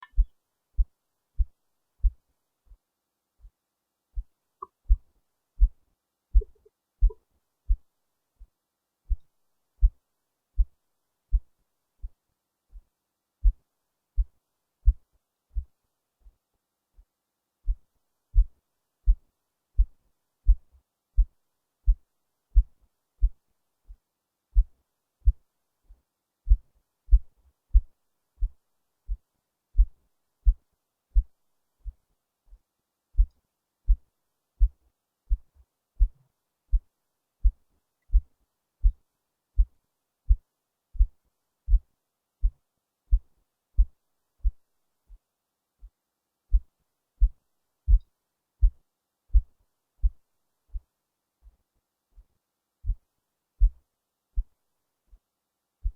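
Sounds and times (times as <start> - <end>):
heartbeat: 0.0 - 2.8, 4.2 - 10.0, 10.6 - 16.4, 18.4 - 19.2, 19.8 - 24.0, 24.6 - 25.5, 26.5 - 32.0, 33.2 - 34.0, 34.6 - 39.0, 40.3 - 45.2, 45.8 - 51.6, 52.2 - 53.8, 54.4 - 55.2.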